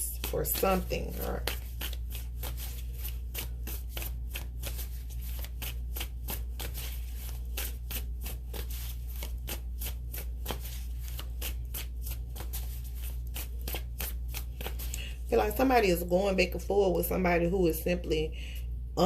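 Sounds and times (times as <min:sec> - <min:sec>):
steady low hum: 0:00.0 - 0:19.0
cards being shuffled: 0:00.1 - 0:15.2.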